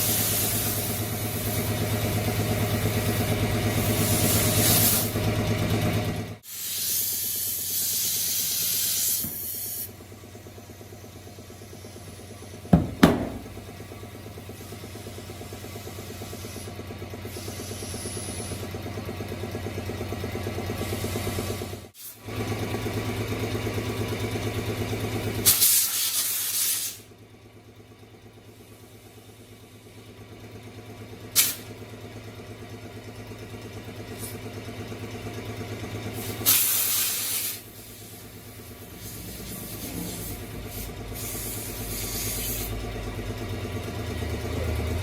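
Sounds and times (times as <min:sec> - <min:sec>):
sharp bursts of air hissing: 0:00.0 - 0:05.3, 0:06.4 - 0:10.0, 0:10.6 - 0:13.8, 0:14.5 - 0:18.7, 0:20.8 - 0:22.3, 0:25.4 - 0:27.1, 0:31.3 - 0:31.8, 0:36.0 - 0:42.8.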